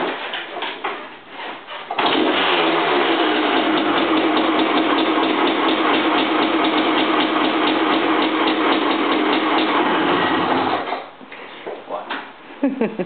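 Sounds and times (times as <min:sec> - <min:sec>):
two-stroke motorcycle engine running: 0:02.0 - 0:10.8.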